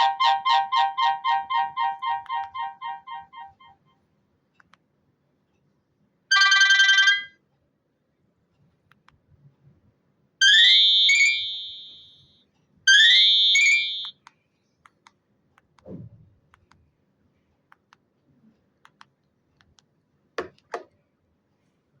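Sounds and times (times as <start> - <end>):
mobile phone ringtone: 0.0 - 3.7, 6.3 - 7.4, 10.4 - 12.3, 12.9 - 14.1.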